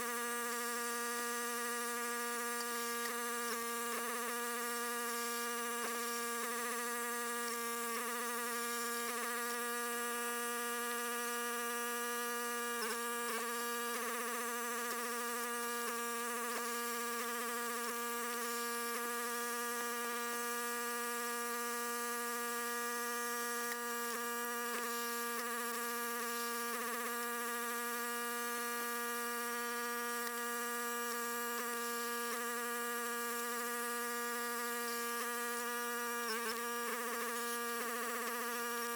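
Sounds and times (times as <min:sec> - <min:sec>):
log splitter buzzing hum: 0:22.0 - 0:38.9.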